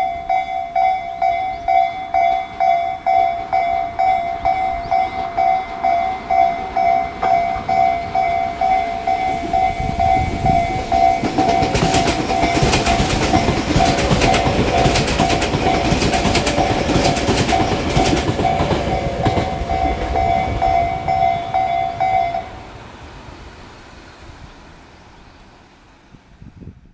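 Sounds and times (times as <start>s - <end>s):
level crossing warning bell: 0.0s - 23.0s
train wheels clacking over rail joints: 1.7s - 22.6s.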